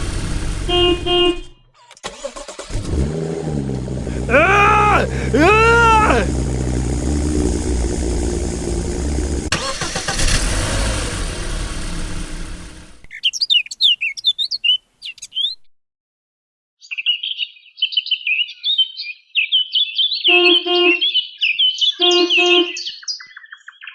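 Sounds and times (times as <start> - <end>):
loud vehicle rumble: 2.7 - 9.5
birds chirping and singing: 13.1 - 15.6
low-pitched bird calls: 13.1 - 15.6.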